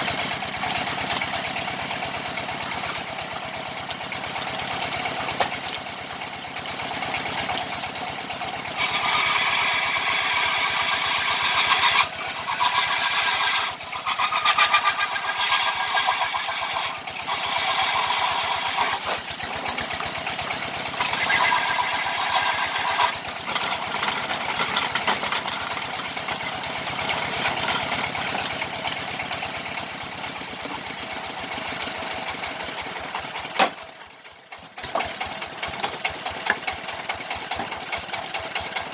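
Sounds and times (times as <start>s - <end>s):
power tool cutting wood: 8.4s - 29.4s.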